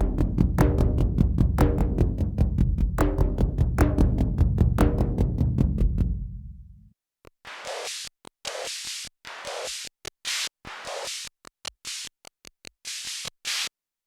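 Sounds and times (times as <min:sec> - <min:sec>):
tom-like drum hits: 0:00.0 - 0:06.8.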